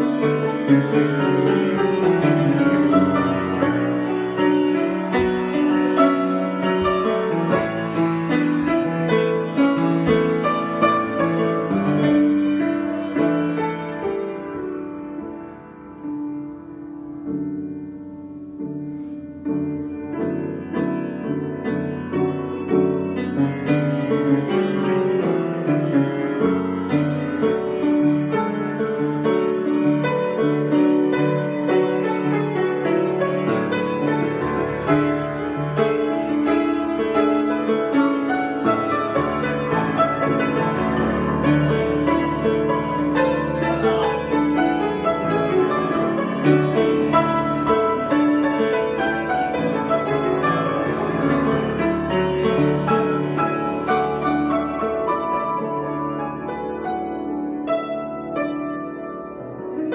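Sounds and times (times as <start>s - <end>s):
piano improvisation: 0.0s - 59.9s.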